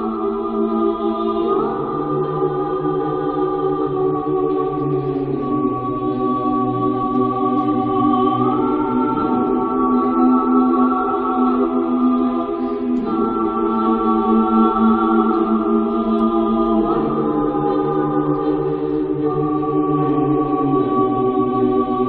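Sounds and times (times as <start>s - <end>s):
choir singing sustained chords: 0.0s - 22.0s.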